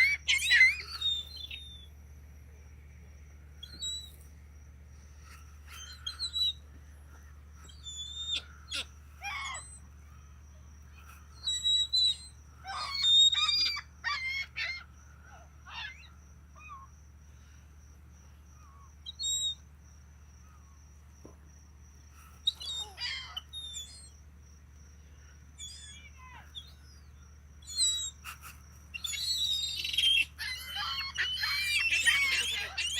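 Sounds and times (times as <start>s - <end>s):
low background rumble: 0.0s - 32.9s
gulls squawking: 28.2s - 32.9s.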